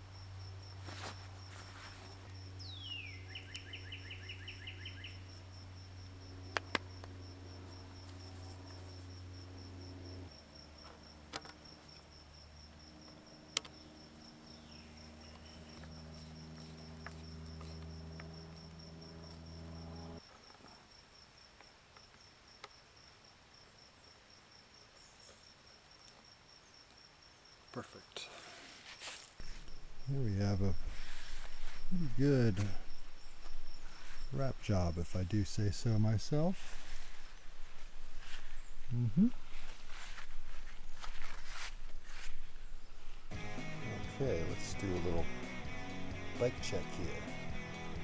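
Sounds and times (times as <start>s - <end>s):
insects chirping: 0.0s - 28.2s, 28.9s - 48.0s
bird trill: 2.6s - 5.3s.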